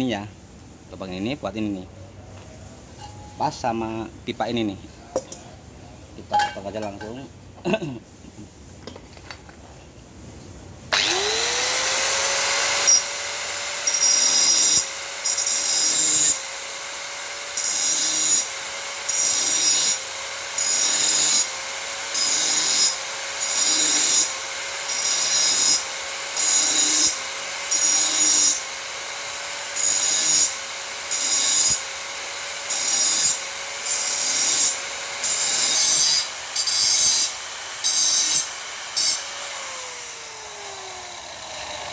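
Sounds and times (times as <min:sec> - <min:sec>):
power cutter cutting sheet metal: 0:10.9 - 0:41.9.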